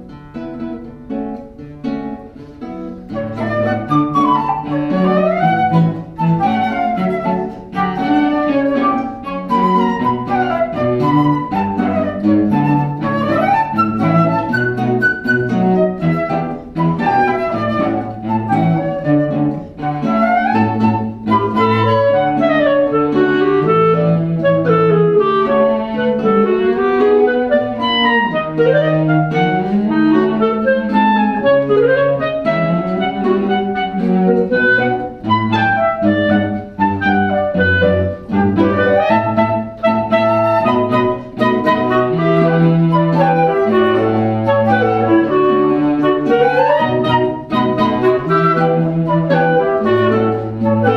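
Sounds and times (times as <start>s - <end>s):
instrumental music: 0.0s - 50.9s.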